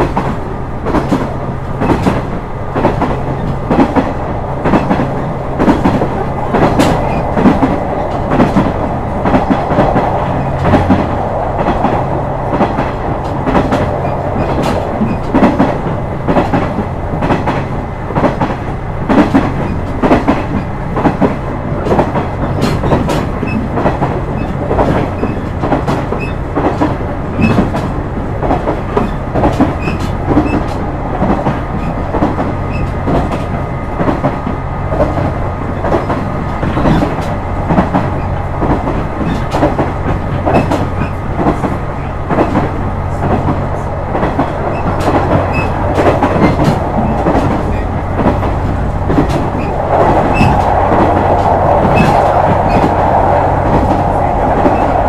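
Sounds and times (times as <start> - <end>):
diesel railcar engine drone: 0.0 - 55.0
wheels clacking over rail joints: 0.0 - 55.0
rushing noise: 41.7 - 55.0.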